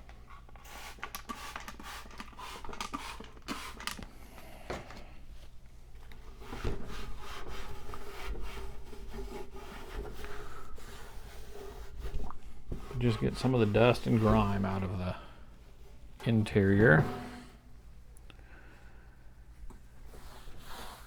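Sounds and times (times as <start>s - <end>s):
scraping on computer case: 16.0s - 17.8s.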